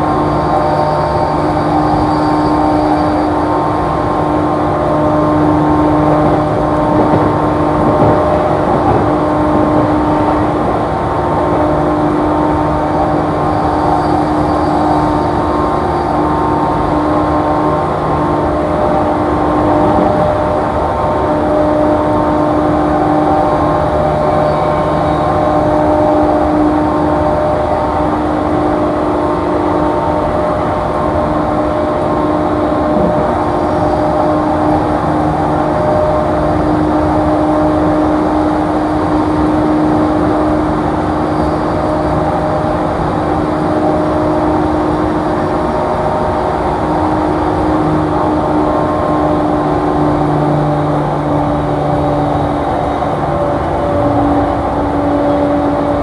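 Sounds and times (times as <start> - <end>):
train wheels rumbling on rail: 0.0 - 56.0.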